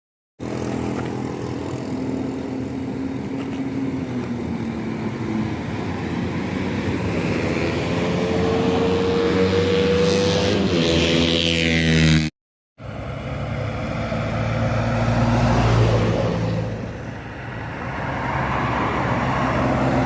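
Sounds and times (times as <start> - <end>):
bus engine drone: 0.4 - 11.8, 12.8 - 20.0.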